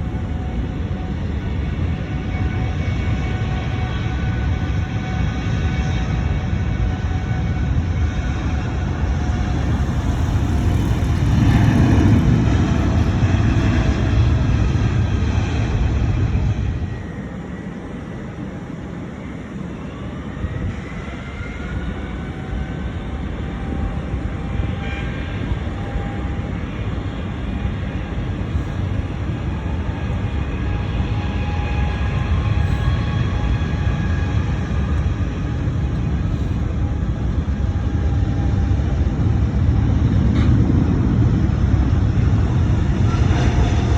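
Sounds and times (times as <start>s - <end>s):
faint steady whining tones: 0.0s - 13.6s, 16.6s - 39.2s
jet engines rumbling: 7.0s - 24.4s.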